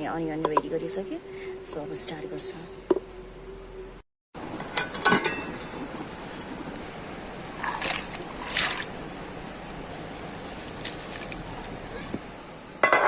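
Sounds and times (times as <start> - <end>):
cookware clattering: 4.6 - 5.8.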